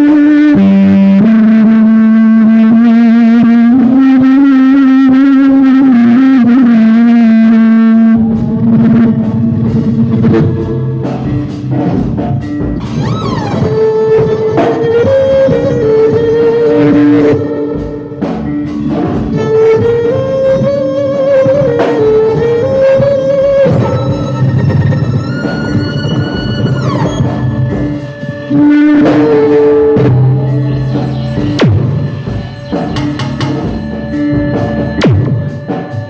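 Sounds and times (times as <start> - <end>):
band music: 0.0 - 36.0
drums: 0.0 - 36.0
guitar: 0.0 - 36.0
sliding melody line: 12.8 - 18.7.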